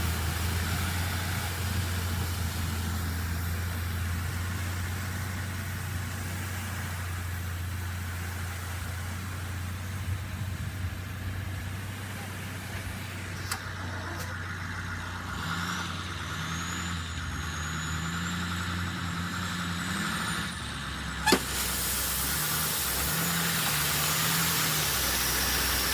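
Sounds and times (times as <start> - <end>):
construction machine engine running: 0.0 - 25.9
steady hiss: 21.3 - 25.9.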